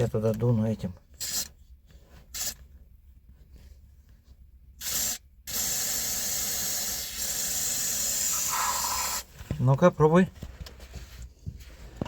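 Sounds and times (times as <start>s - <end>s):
aerosol spray hissing: 4.9s - 9.3s.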